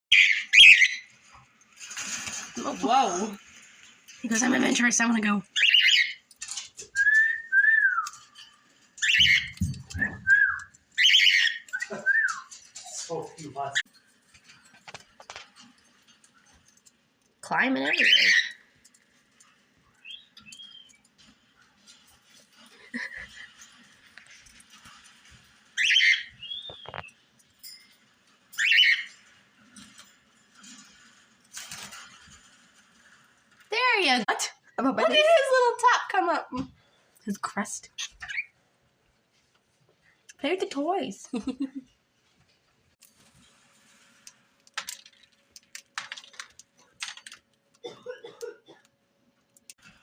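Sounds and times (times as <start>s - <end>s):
rustling: 1.0s - 5.2s
soft bird chirps: 19.9s - 21.2s, 25.8s - 28.0s.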